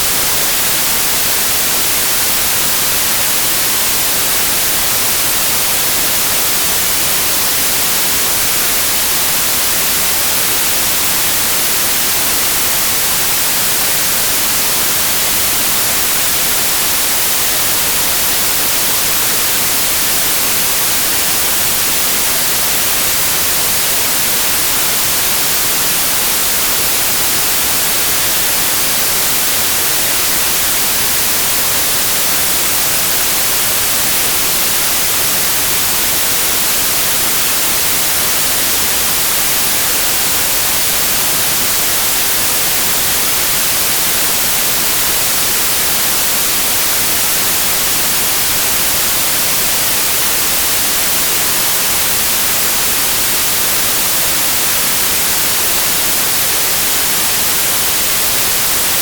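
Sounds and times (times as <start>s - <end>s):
steady white noise hiss: 0.0s - 59.0s.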